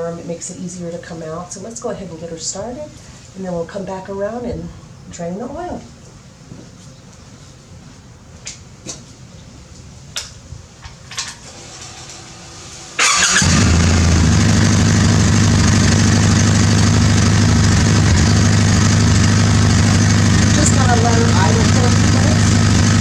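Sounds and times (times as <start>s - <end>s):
faint hum: 13.0s - 23.0s
motorcycle engine idling: 13.0s - 23.0s.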